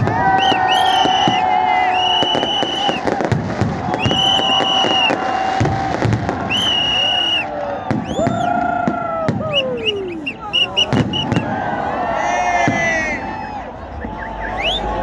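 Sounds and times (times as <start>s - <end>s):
fireworks bangs and crackles: 0.0s - 11.9s, 12.6s - 14.4s
whistling fireworks: 0.0s - 11.9s, 12.5s - 15.0s
crowd noise: 0.0s - 15.0s.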